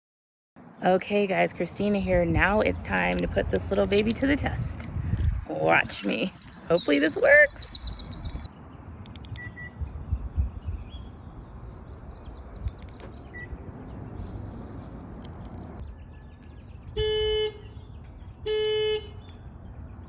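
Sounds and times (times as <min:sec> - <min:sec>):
wind and microphone handling rumble: 0:00.9 - 0:20.0
car horn toots: 0:17.0 - 0:19.3.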